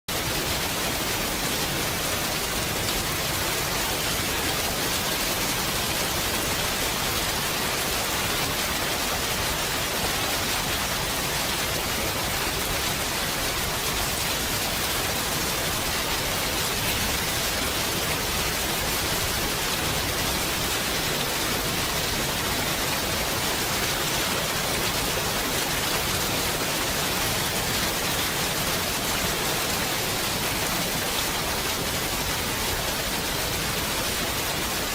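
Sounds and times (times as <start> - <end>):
steady rain: 0.1 - 34.9.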